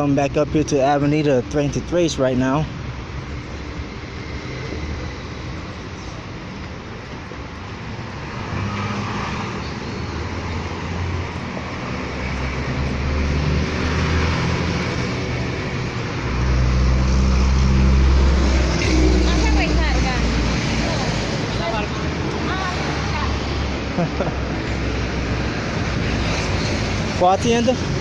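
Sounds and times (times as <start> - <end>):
large vehicle engine hum: 0.0 - 28.0
street traffic: 0.0 - 28.0.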